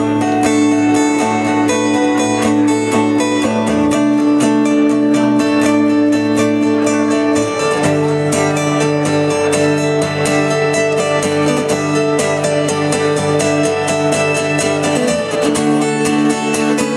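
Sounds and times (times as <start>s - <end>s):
acoustic guitar strumming: 0.0s - 16.9s.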